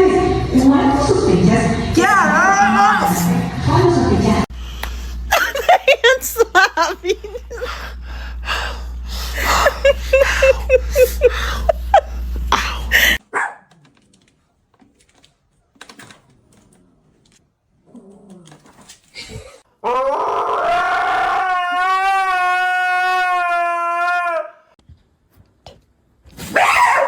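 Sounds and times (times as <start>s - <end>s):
dog yelping: 13.3s - 13.7s, 26.5s - 27.0s
dog howling: 19.8s - 24.7s, 26.6s - 27.0s.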